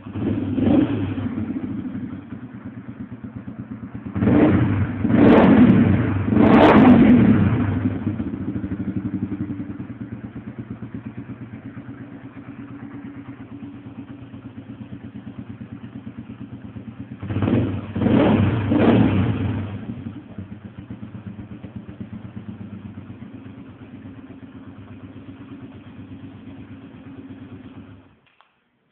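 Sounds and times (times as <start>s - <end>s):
engine idling and revving: 0.0s - 28.2s.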